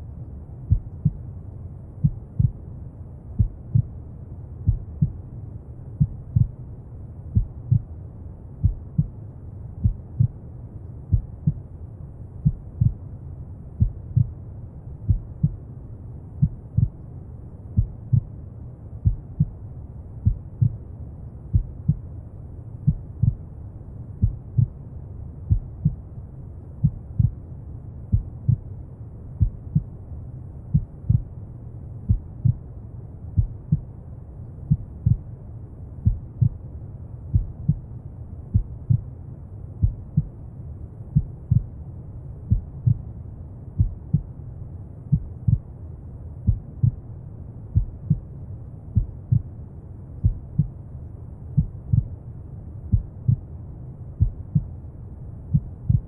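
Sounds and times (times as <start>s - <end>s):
heartbeat double thump: 2.0s - 2.6s, 22.9s - 23.4s, 37.3s - 37.8s, 55.5s - 56.0s.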